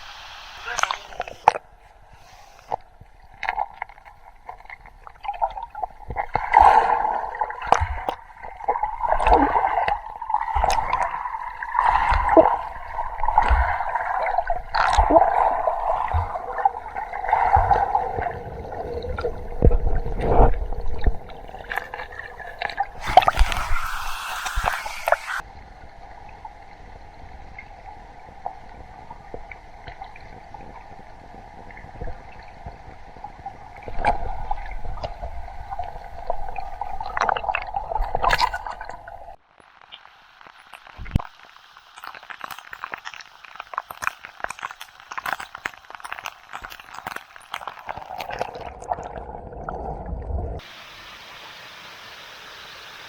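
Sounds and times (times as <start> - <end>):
small waterfall splashing: 23.0 - 25.4.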